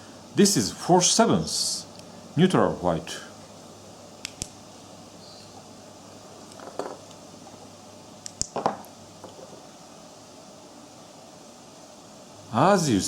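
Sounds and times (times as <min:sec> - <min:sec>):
flashlight clicks: 0:04.2 - 0:04.6, 0:08.2 - 0:08.6
small knocks: 0:06.5 - 0:07.1, 0:08.4 - 0:09.6.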